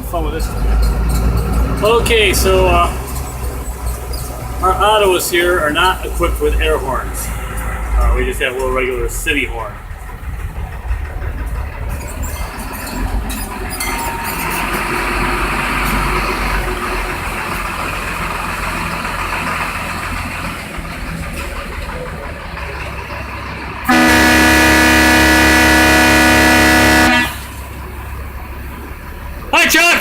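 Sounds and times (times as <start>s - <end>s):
truck engine rumbling: 0.0s - 30.0s
air horn blast: 23.9s - 27.6s.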